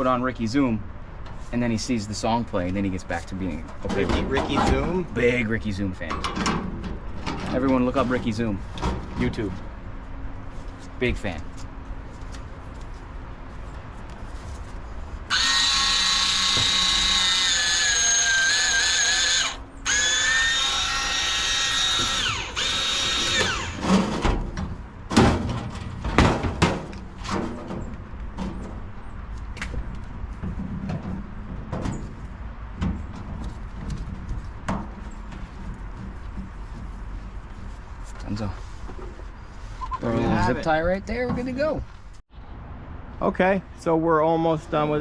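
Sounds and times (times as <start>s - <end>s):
power drill whining: 15.3s - 23.9s
knocks and clatter: 23.8s - 37.0s.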